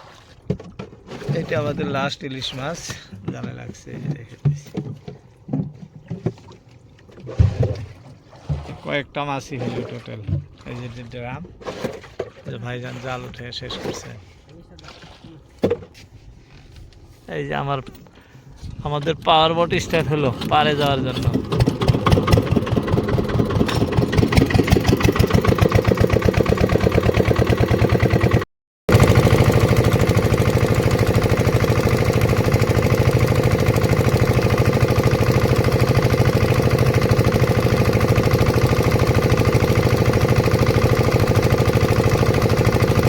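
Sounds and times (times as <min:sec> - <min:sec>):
power boat engine running: 0:19.7 - 0:43.0.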